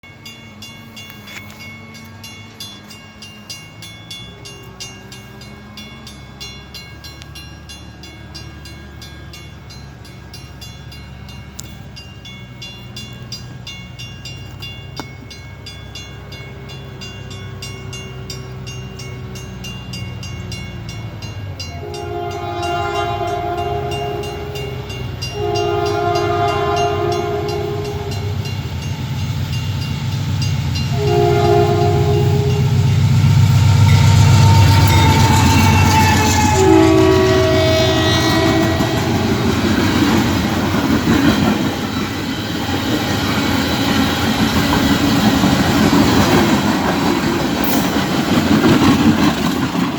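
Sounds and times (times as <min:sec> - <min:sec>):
diesel locomotive engine rumble: 0:00.0 - 0:49.9
train horn blasts: 0:21.7 - 0:28.5, 0:30.8 - 0:40.0.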